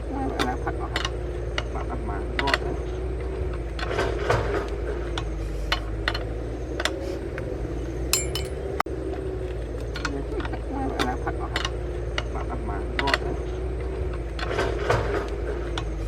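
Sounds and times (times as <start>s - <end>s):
ringing metallic clink: 8.1s - 8.8s.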